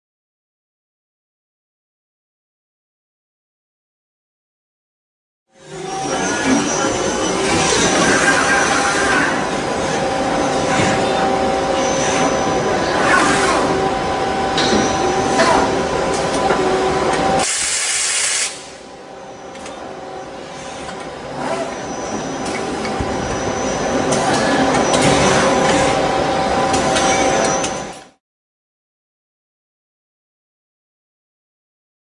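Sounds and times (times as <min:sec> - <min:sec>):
lathe whine over hiss: 0:16.9 - 0:19.3
loud hiss: 0:17.4 - 0:18.8.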